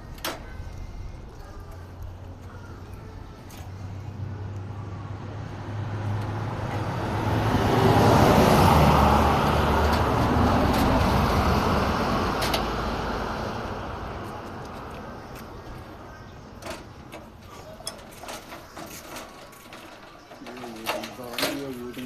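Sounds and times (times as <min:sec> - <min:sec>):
road vehicle passing: 0:00.0 - 0:22.0.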